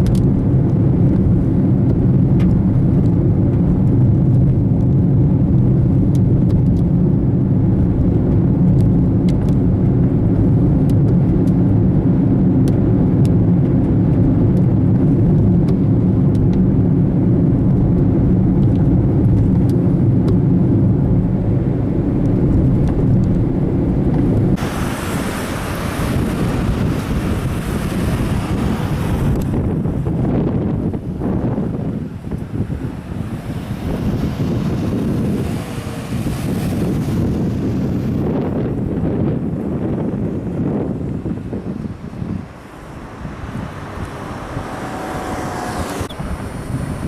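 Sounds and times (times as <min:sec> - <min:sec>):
engine and road noise drone: 0:00.0 - 0:47.0
wind noise hiss: 0:22.3 - 0:47.0.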